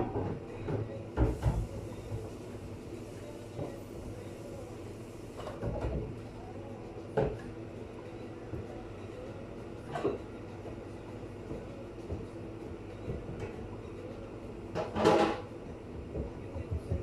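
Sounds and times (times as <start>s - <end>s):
steady machine hum: 0.0s - 17.0s
kitchen knocks and clatter: 14.8s - 17.0s.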